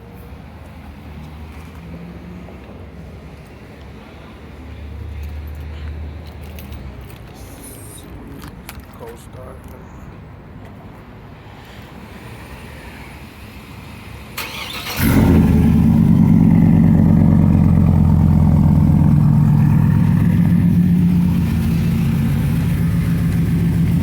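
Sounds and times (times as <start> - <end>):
engine cranking: 14.4 - 16.1
truck engine running loudly: 15.0 - 24.0.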